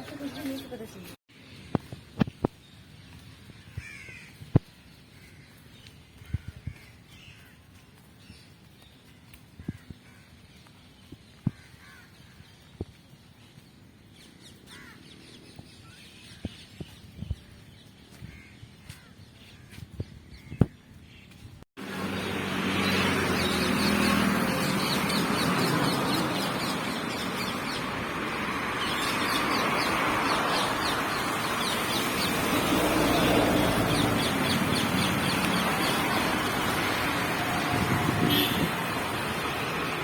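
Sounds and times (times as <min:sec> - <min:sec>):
outdoor background noise: 0:00.0 - 0:40.0
crows cawing: 0:03.8 - 0:04.4, 0:11.5 - 0:12.2, 0:14.7 - 0:15.0.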